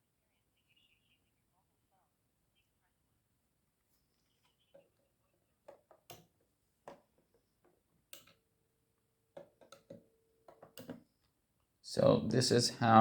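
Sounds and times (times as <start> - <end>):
faint sharp clicks and knocks: 4.3 - 8.5, 9.3 - 11.4.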